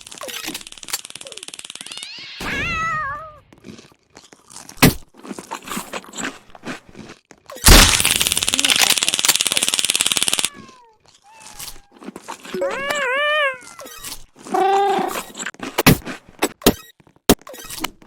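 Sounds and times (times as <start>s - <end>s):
cat meowing: 12.6s - 15.2s.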